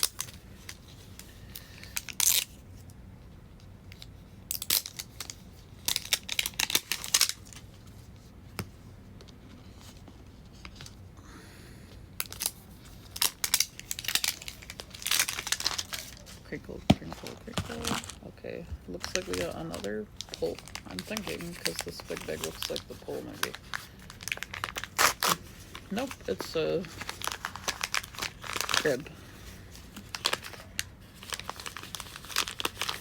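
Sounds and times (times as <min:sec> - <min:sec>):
plastic wrapping crinkling and tearing: 0:00.0 - 0:02.6, 0:04.0 - 0:07.8, 0:12.2 - 0:33.0.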